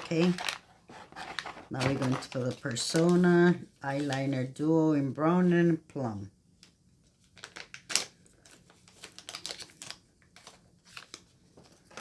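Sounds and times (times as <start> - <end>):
packaging clicks and rustles: 0.0 - 3.3, 7.2 - 12.0.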